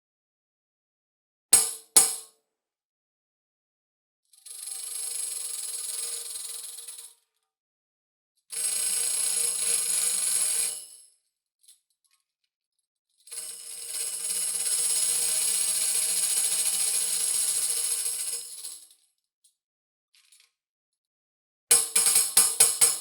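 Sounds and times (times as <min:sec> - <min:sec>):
tambourine jingle rolls: 0:13.2 - 0:19.0.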